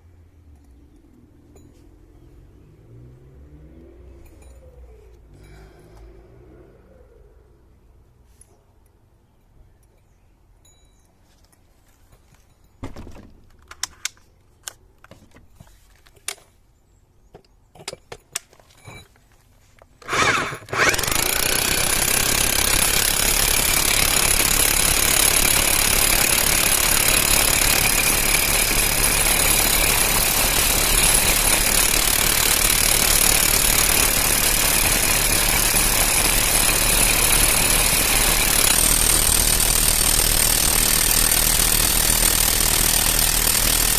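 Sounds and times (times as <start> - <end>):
handling clicks and knocks: 11.0 - 16.6, 17.3 - 20.0
rotary hammer running: 20.0 - 43.9.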